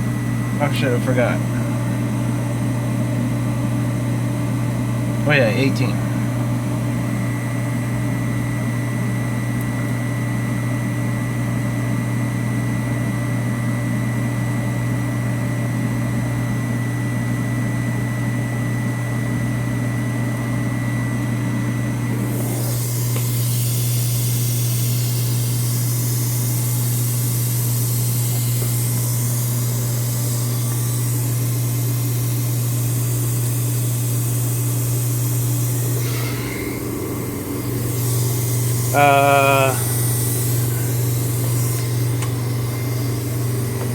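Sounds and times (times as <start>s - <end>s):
milling machine hum: 0.0s - 43.9s
loud air hiss: 22.2s - 43.4s.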